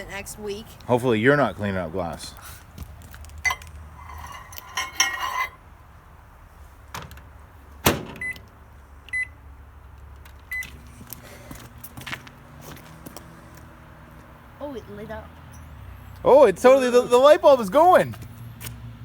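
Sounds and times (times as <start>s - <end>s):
handling clatter: 3.3s - 5.6s
microwave door click: 7.9s - 8.5s
keypad beeps: 8.2s - 8.4s, 9.1s - 9.3s, 10.5s - 10.7s.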